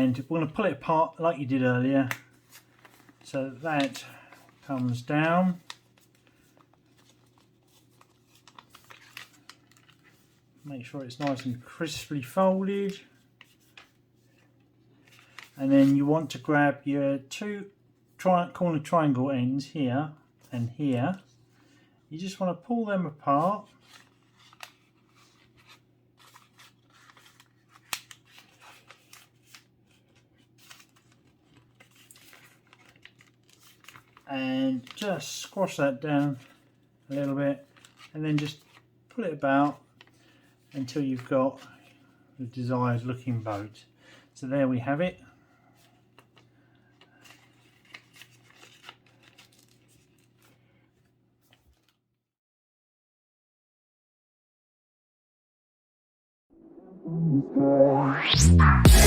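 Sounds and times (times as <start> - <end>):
paper rustling and crinkling: 2.2 - 11.6, 12.8 - 16.0, 23.4 - 38.9, 39.6 - 42.0, 45.7 - 52.0.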